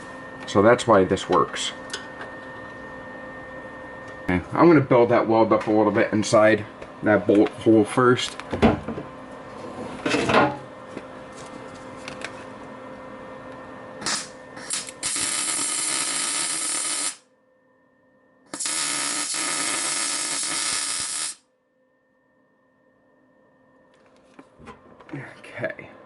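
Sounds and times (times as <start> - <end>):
welder arc crackling: 14.0 - 17.2, 18.5 - 21.4.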